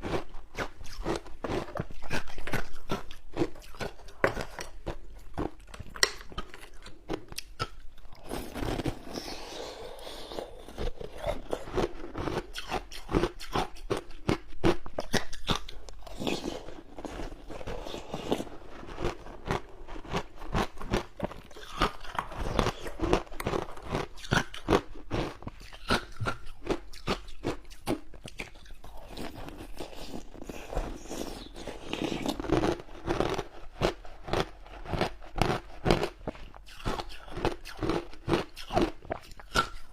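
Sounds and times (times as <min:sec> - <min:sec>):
person crunching frozen ice: 0:00.0 - 0:27.6, 0:28.4 - 0:39.7.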